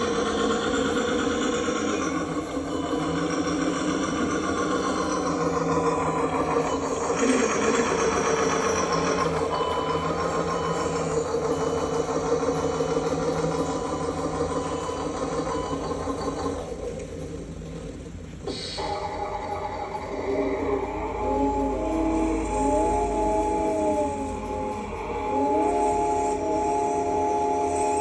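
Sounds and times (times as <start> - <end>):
small electric motors whining: 19.5 - 28.0.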